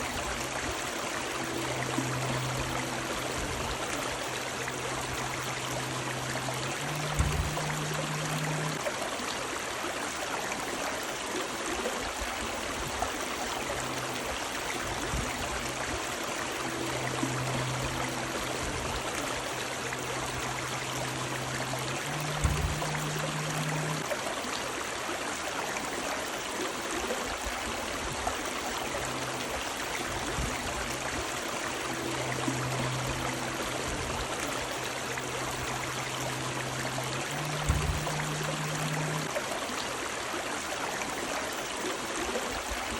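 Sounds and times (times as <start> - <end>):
faint low hum: 0.0 - 8.8, 13.1 - 24.1, 28.5 - 39.4
river water rushing and gurgling: 0.0 - 42.9.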